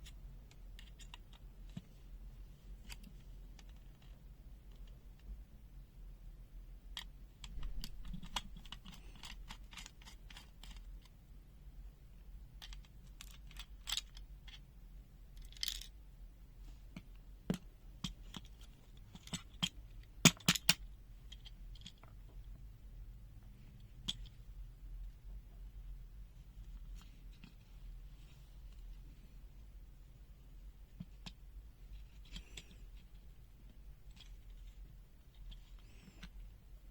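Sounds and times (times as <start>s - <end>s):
plastic clicks and scrapes: 7.0s - 11.1s.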